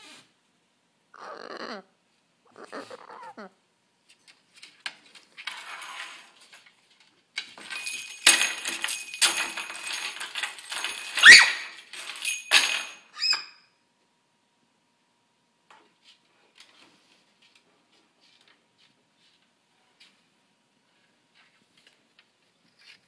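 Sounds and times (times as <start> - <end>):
small bells jingling: 7.6 - 13.3.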